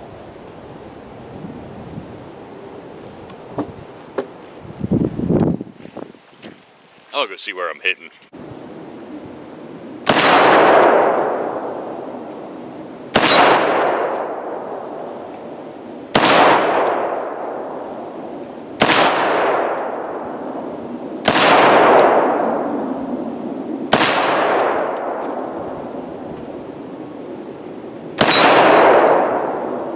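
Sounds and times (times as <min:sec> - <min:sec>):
rifle shots with ringing tail: 0:10.1 - 0:12.1, 0:13.1 - 0:15.1, 0:16.1 - 0:18.0, 0:18.8 - 0:22.8, 0:23.9 - 0:25.5, 0:28.2 - 0:29.9.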